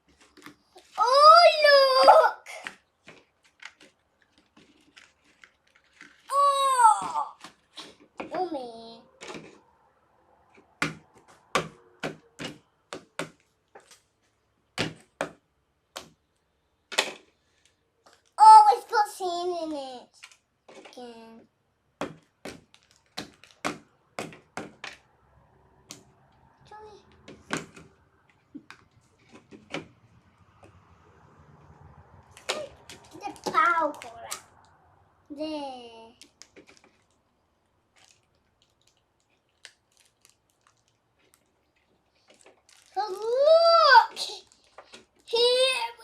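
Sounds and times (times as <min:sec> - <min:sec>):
plastic parts clicking and knocking: 0:02.6 - 0:06.3, 0:10.5 - 0:18.4, 0:22.0 - 0:25.1, 0:36.2 - 0:43.2.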